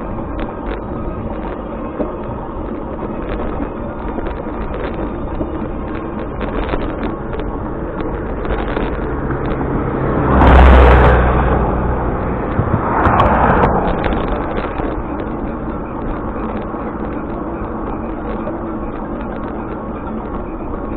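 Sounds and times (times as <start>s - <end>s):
vehicle and road noise: 0.0s - 20.9s
vehicle passing close by: 9.3s - 15.0s.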